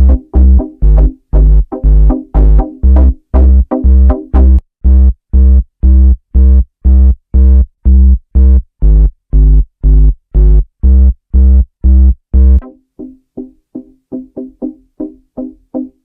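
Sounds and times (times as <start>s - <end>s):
short plucked notes: 0.0s - 5.5s
synthesizer chord with bass pulses: 0.0s - 12.6s.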